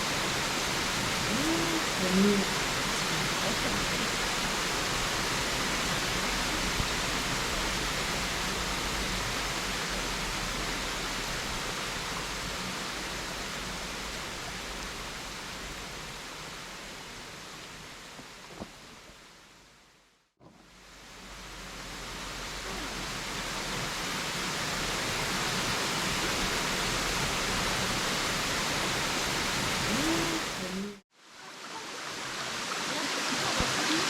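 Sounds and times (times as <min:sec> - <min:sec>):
small waterfall rushing: 0:00.0 - 0:34.0.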